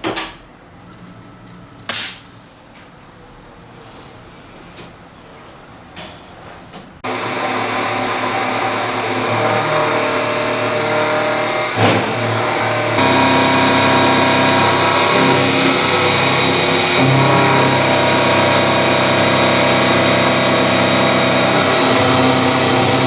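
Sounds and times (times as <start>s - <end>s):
machine tool whining: 7.0s - 23.0s.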